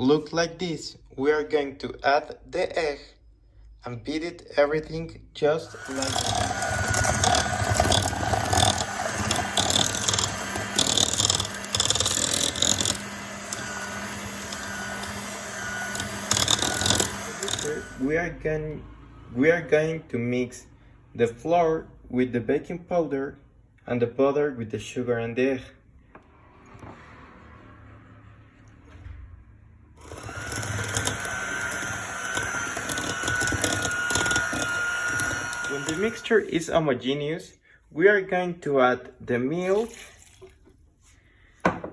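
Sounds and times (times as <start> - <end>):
beaters scraping bowl: 5.6 - 18.1, 30.0 - 36.7
electric hand mixer motor humming: 5.6 - 18.1, 30.0 - 36.5.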